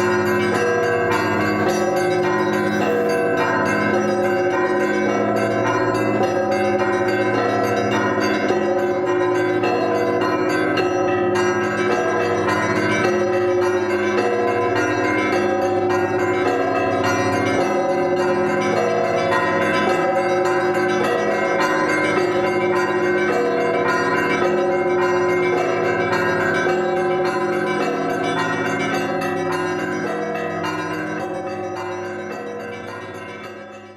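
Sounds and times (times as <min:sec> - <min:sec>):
church bells pealing: 0:00.0 - 0:33.9
hum of large bells: 0:00.0 - 0:33.9.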